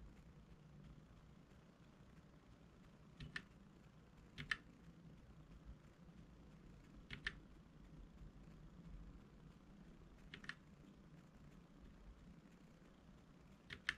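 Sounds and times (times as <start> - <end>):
mechanical keyboard key clicks: 3.2 - 3.5, 4.4 - 4.6, 7.1 - 7.4, 10.3 - 10.6, 13.7 - 13.9.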